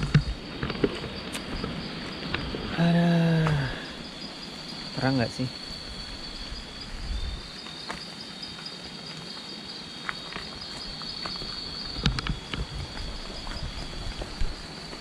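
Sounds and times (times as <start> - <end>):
crickets chirring: 0.0 - 15.0.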